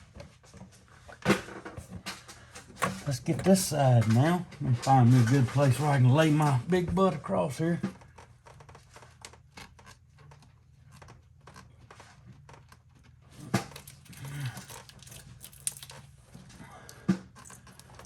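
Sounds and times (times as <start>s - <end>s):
faint low hum: 12.5s - 18.0s.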